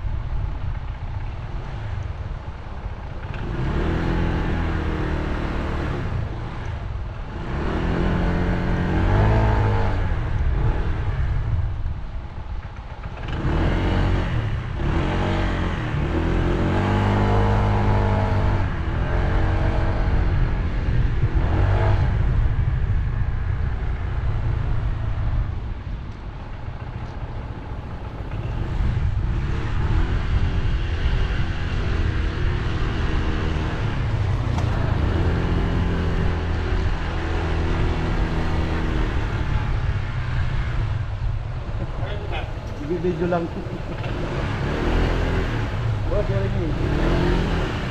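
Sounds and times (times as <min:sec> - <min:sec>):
scooter engine revving: 0:41.7 - 0:47.9.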